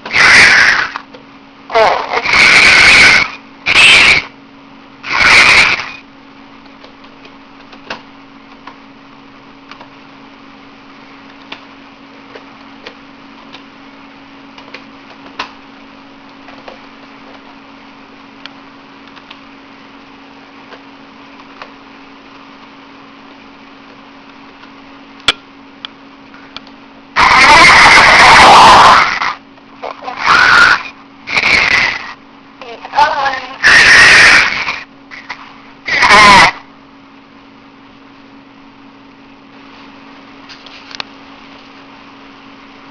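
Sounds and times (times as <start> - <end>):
loud noisy burst: 0.0 - 1.0, 1.7 - 4.3, 5.0 - 6.0, 27.2 - 29.4, 30.1 - 32.2, 33.6 - 36.6.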